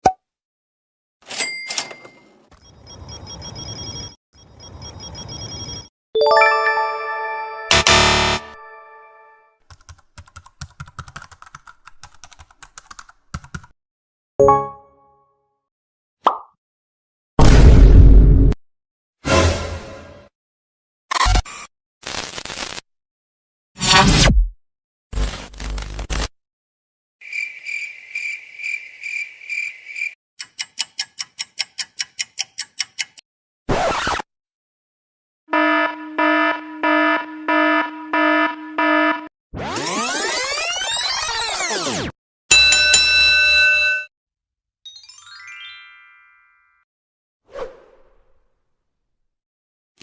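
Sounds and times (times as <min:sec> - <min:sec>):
keyboard typing clicks: 0:09.7 - 0:13.7, 0:30.4 - 0:33.2.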